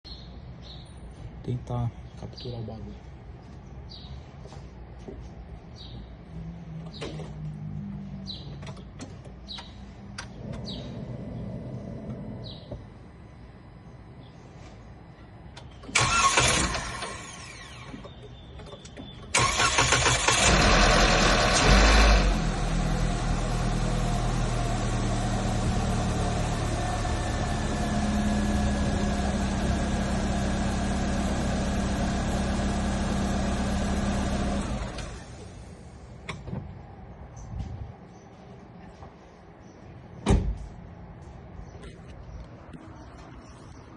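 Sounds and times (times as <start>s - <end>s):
car engine starting and idling: 15.6s - 18.3s, 19.0s - 36.5s.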